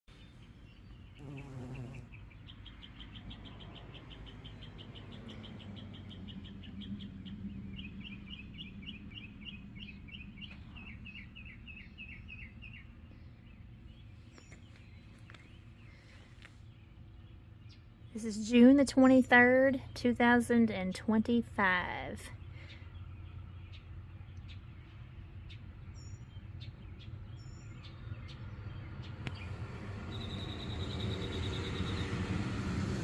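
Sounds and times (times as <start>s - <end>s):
bumblebees buzzing: 1.1s - 2.3s.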